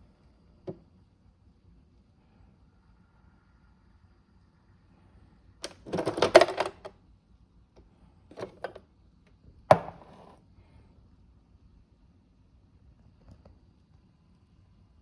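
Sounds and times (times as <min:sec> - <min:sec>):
espresso machine clicks: 0:05.6 - 0:06.9, 0:08.3 - 0:08.8, 0:09.7 - 0:10.4.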